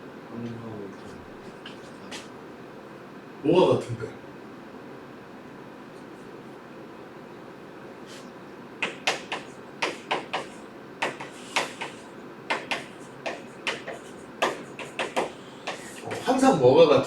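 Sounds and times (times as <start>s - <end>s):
writing strokes on a board: 8.8s - 16.4s.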